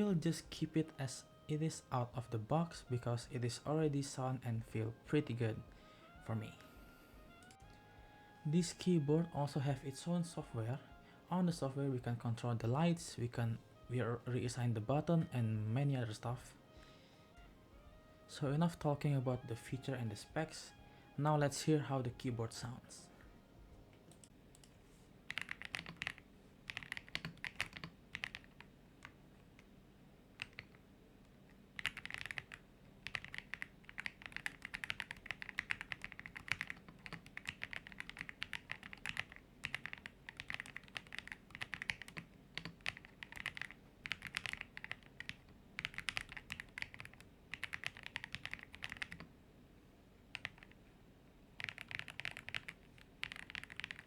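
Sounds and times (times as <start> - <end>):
mechanical keyboard typing: 25.3 - 29.7, 30.4 - 30.8, 31.8 - 49.3, 50.3 - 50.8, 51.6 - 54.0.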